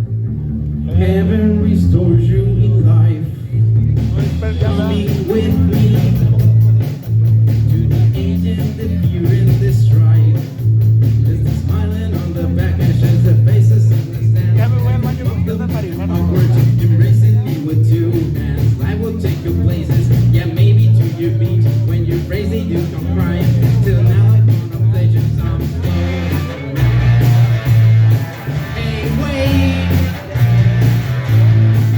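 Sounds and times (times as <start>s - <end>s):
bass line: 0.0s - 31.9s
drums: 0.0s - 31.9s
electric guitar: 3.9s - 31.9s.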